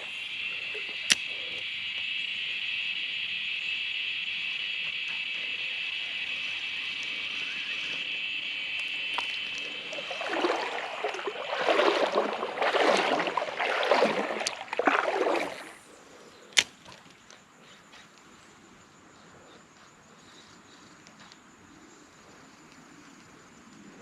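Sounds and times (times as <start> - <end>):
insects buzzing: 0.0 - 24.0
creek water sloshing and splashing: 8.8 - 15.9.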